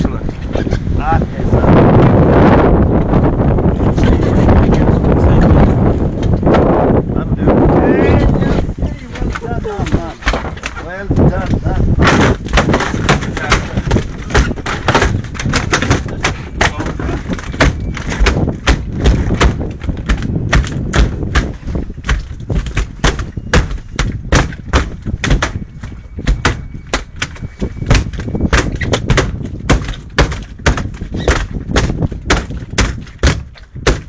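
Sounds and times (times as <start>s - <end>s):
fish slamming on boat deck: 11.8s - 34.0s.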